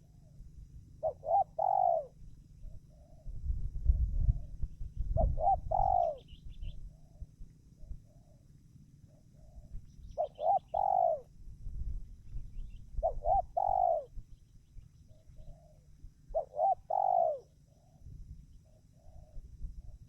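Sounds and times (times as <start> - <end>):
dove cooing: 1.0 - 3.3, 4.2 - 11.3, 13.0 - 14.2, 15.1 - 18.0, 18.6 - 20.0.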